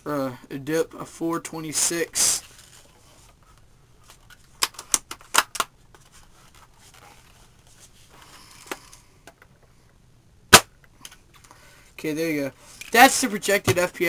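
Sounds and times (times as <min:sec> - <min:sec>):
airsoft rifle shot: 0:10.5 - 0:10.7.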